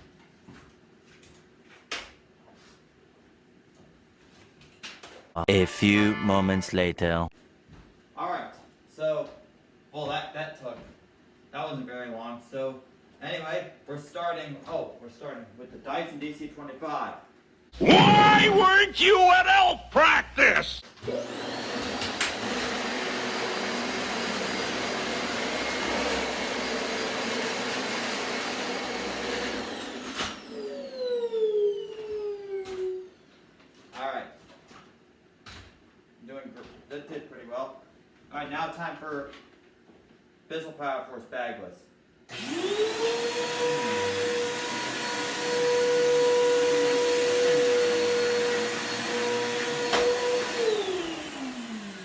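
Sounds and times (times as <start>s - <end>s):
upright vacuum cleaner running: 21.0s - 32.6s, 42.3s - 52.0s.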